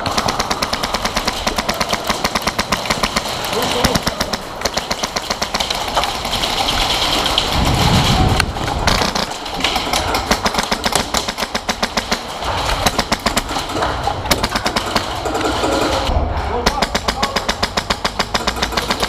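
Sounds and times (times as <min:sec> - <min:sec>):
airsoft guns firing bursts: 0:00.0 - 0:07.2, 0:08.8 - 0:13.6, 0:14.3 - 0:19.0
low rumbling noise: 0:00.0 - 0:19.0.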